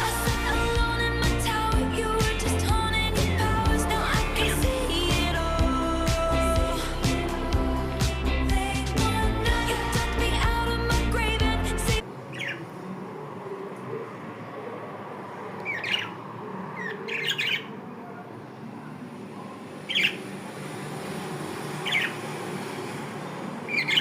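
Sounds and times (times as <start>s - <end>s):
music: 0.0s - 12.0s
budgerigars chirping and squawking: 15.6s - 16.2s, 16.8s - 17.8s, 19.8s - 20.3s, 21.8s - 22.2s, 23.7s - 24.0s.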